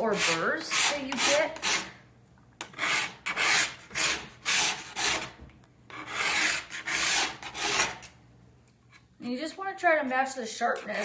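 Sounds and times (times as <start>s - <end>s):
sharpening stone rasping on steel: 0.1s - 2.0s, 2.6s - 5.3s, 5.9s - 8.1s, 10.7s - 11.0s.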